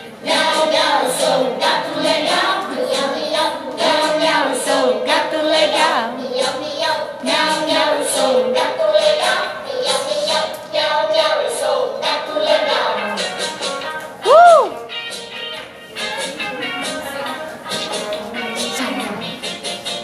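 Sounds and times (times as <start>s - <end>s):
voices singing: 0.0s - 14.7s
instrumental backing music: 0.0s - 20.0s.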